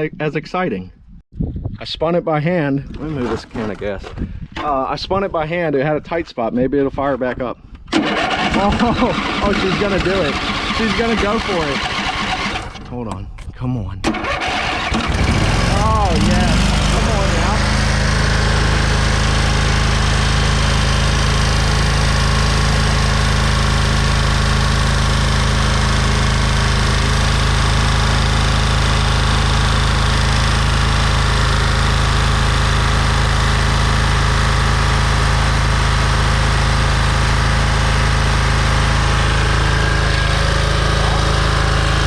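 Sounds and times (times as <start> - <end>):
lawn mower engine running fast: 7.9 - 12.9, 14.1 - 42.0.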